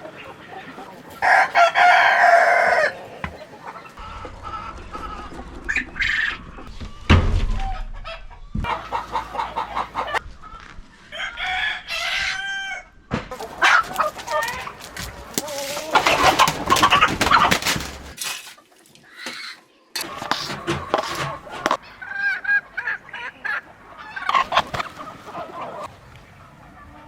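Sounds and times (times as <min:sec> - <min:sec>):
chickens clucking: 0:00.0 - 0:07.0, 0:07.6 - 0:27.0
rooster crowing: 0:01.2 - 0:03.3, 0:11.1 - 0:13.0.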